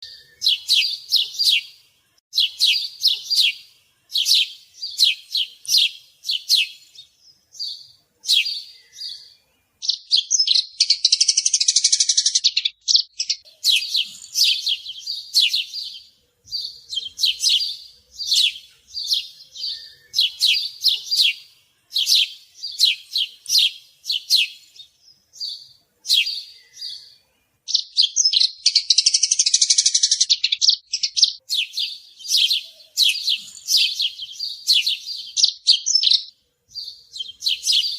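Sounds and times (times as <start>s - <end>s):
songbird chirping and trilling: 0.0s - 37.9s.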